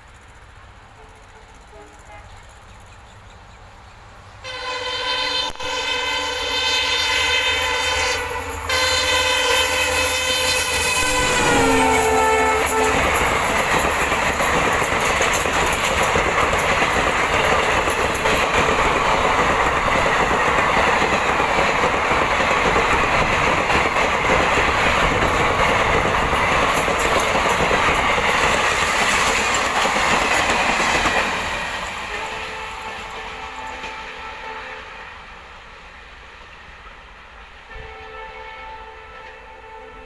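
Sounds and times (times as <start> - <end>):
train rushing past: 0.0 - 40.0
wheels clattering over rail joints: 10.8 - 32.2.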